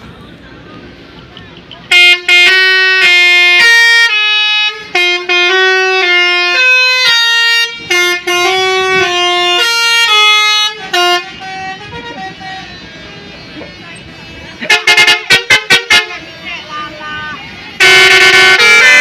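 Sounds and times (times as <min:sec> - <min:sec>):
traffic noise: 0:00.0 - 0:19.0
bus air horn playing a tune: 0:01.9 - 0:19.0.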